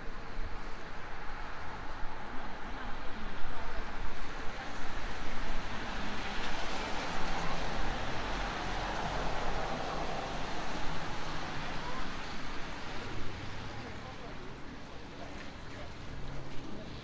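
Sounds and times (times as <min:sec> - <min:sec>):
low city rumble: 0:00.0 - 0:17.0.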